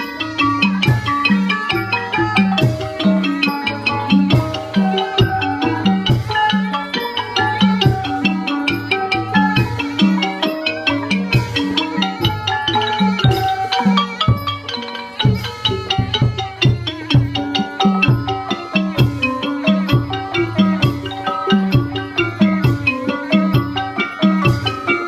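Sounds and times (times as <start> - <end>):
struck pitched percussion melody: 0.0 - 25.0
low drum beats: 11.0 - 25.0.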